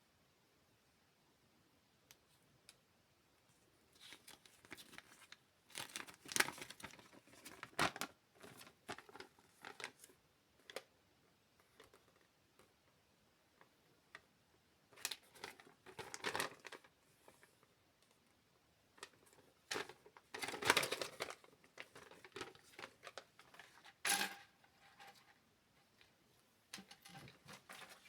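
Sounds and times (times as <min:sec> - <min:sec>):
plastic bag crinkling: 0:04.0 - 0:10.1, 0:15.0 - 0:17.4, 0:19.0 - 0:24.6.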